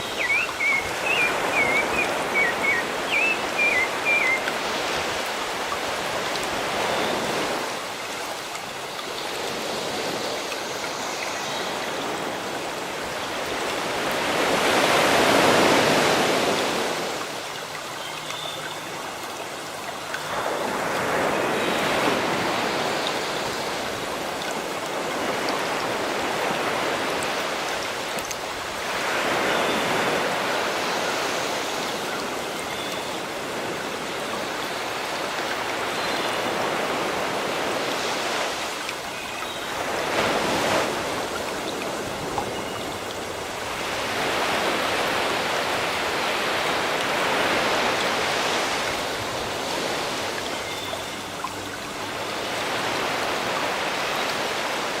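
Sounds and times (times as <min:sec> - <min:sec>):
bird chirping: 0:00.0 - 0:04.4
sea waves washing in: 0:00.0 - 0:55.0.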